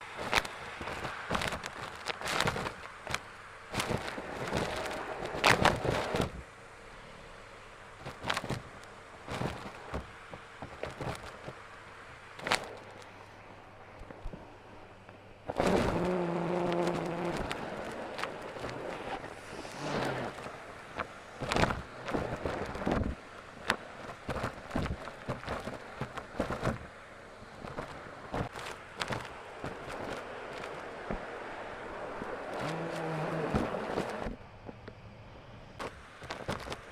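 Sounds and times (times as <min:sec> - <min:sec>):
grit rattling through hose: 0:00.0 - 0:06.4, 0:08.0 - 0:11.6, 0:12.4 - 0:13.1, 0:15.5 - 0:31.3, 0:32.2 - 0:34.4, 0:35.8 - 0:36.9
rustling: 0:00.0 - 0:06.5, 0:08.0 - 0:14.5, 0:15.5 - 0:34.4, 0:35.8 - 0:36.9
vacuum cleaner sucking: 0:18.5 - 0:20.4.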